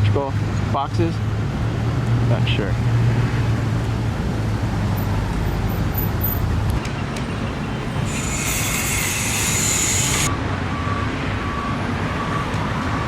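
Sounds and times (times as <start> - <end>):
high-pitched squeal: 8.0 - 10.4.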